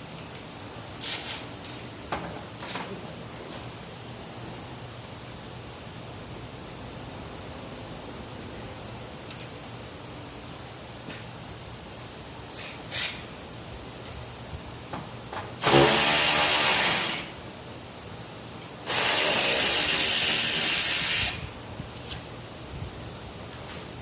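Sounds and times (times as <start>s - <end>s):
power tool running: 15.6s - 17.4s, 18.8s - 21.4s.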